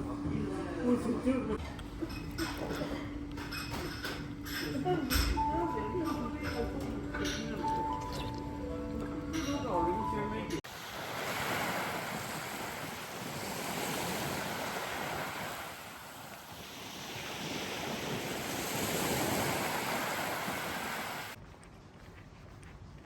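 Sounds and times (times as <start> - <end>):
sea waves washing ashore: 10.6 - 21.4.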